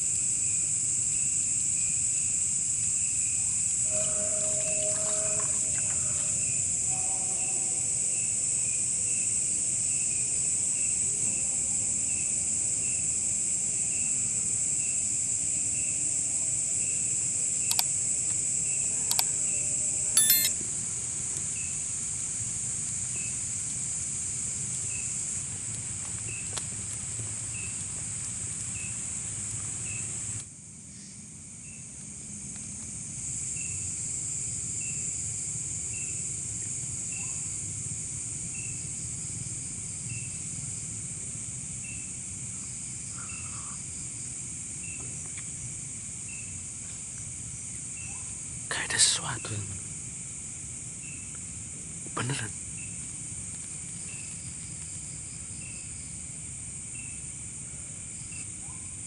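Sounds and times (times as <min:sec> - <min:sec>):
cricket chirp: 0:00.0 - 0:59.0
crickets trilling: 0:00.0 - 0:59.0
sharp clicks: 0:17.7 - 0:17.9, 0:19.1 - 0:19.3, 0:20.2 - 0:20.5.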